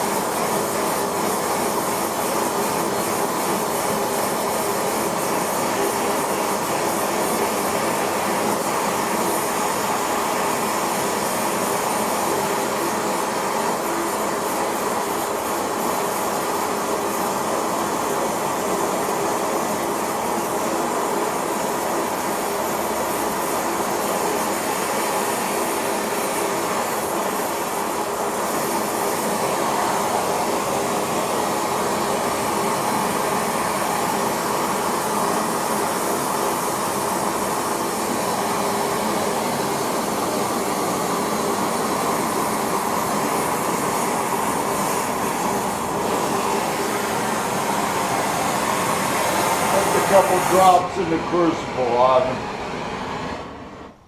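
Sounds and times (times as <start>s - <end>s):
steady rushing noise: 39.7s - 53.5s.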